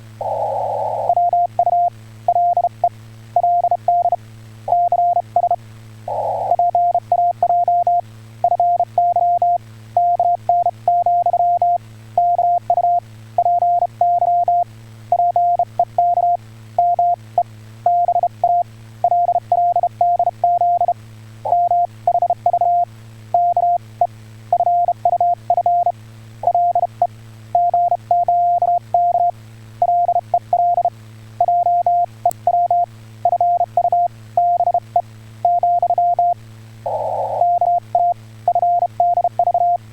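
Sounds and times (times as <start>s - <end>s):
low hum: 0.0s - 2.8s, 3.4s - 14.6s, 27.6s - 39.9s
morse code beeps: 3.4s - 14.6s, 24.6s - 27.0s, 27.6s - 34.8s, 35.5s - 39.8s.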